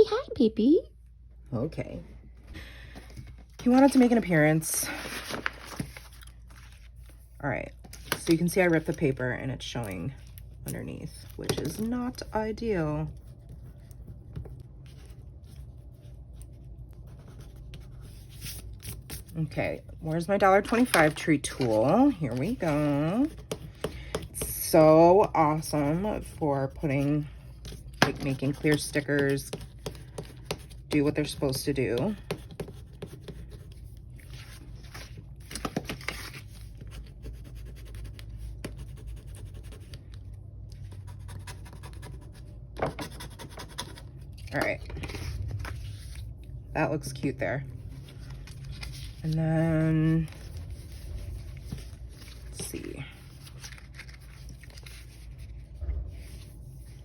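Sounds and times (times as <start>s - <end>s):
low room hum: 0.0s - 57.0s
paper rustling: 3.0s - 8.9s, 33.4s - 37.2s, 47.8s - 57.0s.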